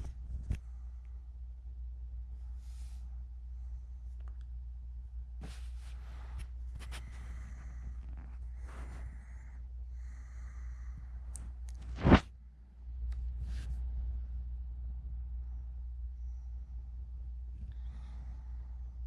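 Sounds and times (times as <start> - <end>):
low hum: 0.0 - 19.0
soft rustles: 5.4 - 9.4, 13.2 - 13.8.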